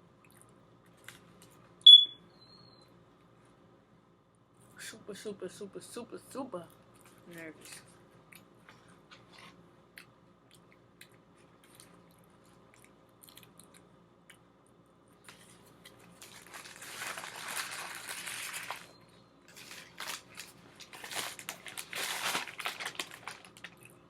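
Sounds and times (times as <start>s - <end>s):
quiet chewing with mouth clicks: 0.2s - 1.6s, 7.8s - 16.1s
paper bag rustling: 16.0s - 23.8s.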